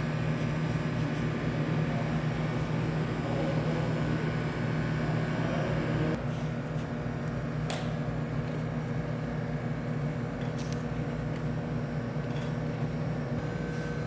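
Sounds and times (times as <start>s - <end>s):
machine hum: 0.0s - 6.2s, 12.8s - 14.0s.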